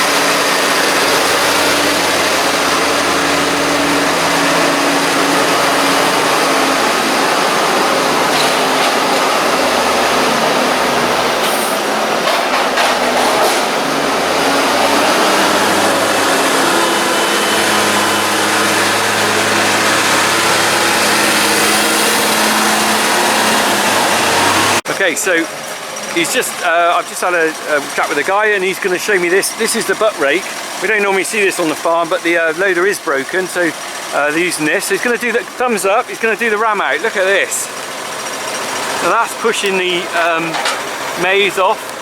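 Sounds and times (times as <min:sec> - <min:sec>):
diesel tractor engine running: 0:00.0 - 0:42.0.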